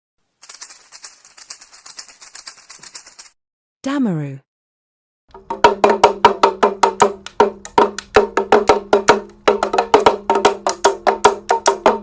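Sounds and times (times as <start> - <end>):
hand drum rattling: 5.3 - 12.0.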